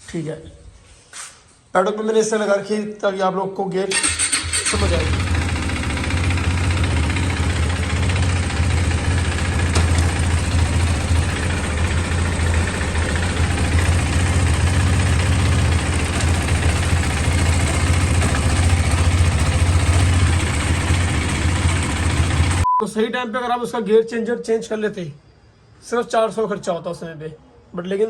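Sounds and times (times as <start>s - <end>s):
motorcycle engine idling: 4.3s - 22.6s.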